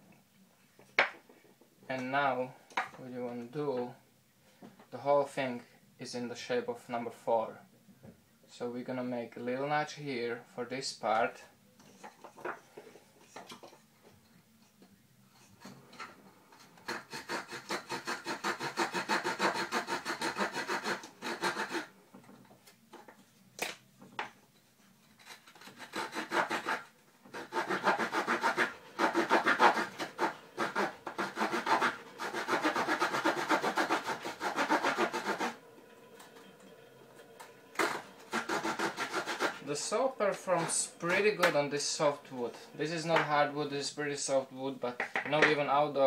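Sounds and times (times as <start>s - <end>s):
small saw cutting wood: 16.6s - 21.9s, 25.2s - 36.8s, 37.4s - 43.3s.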